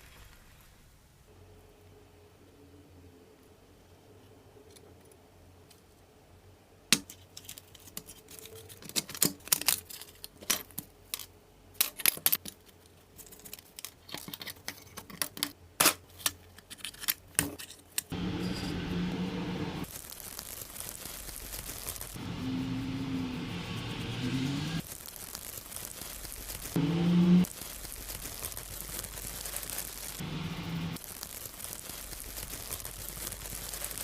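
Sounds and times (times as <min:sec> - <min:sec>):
loud steady sound: 0:18.1 - 0:19.9, 0:22.1 - 0:24.9, 0:26.6 - 0:27.5, 0:29.1 - 0:31.1.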